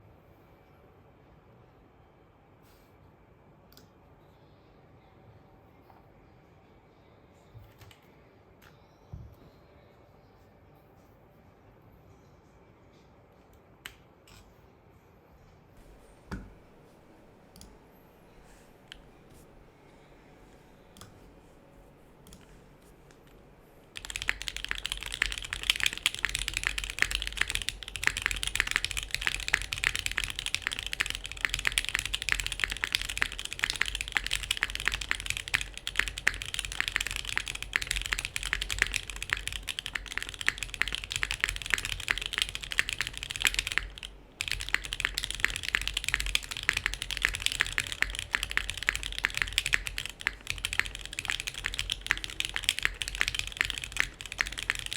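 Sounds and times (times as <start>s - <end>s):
mechanical keyboard typing: 23.9s - 54.9s.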